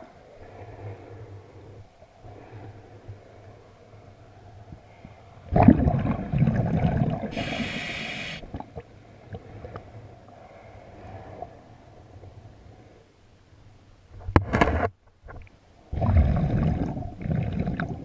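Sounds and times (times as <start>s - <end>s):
exhaled bubbles gurgling underwater: 5.5s - 9.8s, 15.9s - 18.0s
regulator inhalation hiss: 7.3s - 8.5s.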